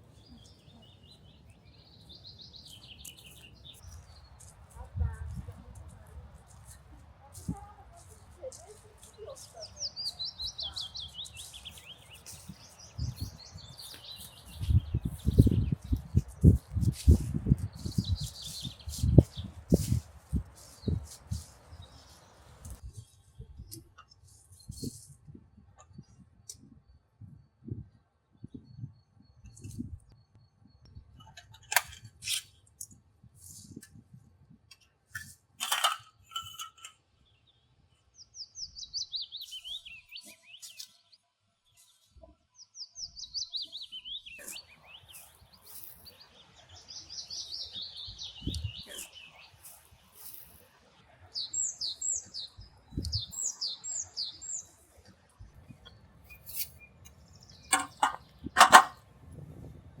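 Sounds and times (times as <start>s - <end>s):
birds singing trills: 0.0s - 5.6s, 7.4s - 25.2s, 34.8s - 50.6s, 51.3s - 54.9s, 55.6s - 59.0s
high bird chirps: 9.1s - 20.0s, 46.9s - 49.5s
sharp clicks and knocks: 57.7s - 59.0s.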